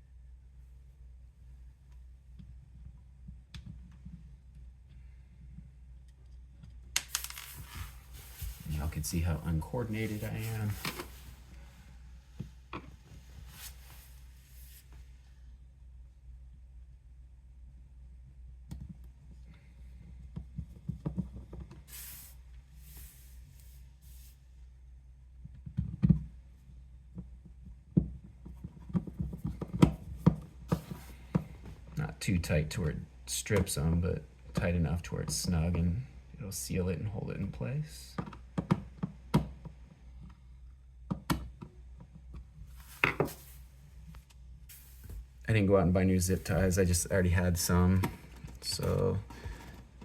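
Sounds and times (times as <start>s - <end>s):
steady low hum: 0.0s - 25.6s, 26.2s - 50.0s
short rustling hisses: 7.1s - 11.8s, 13.4s - 15.1s, 21.9s - 24.4s, 44.7s - 45.4s.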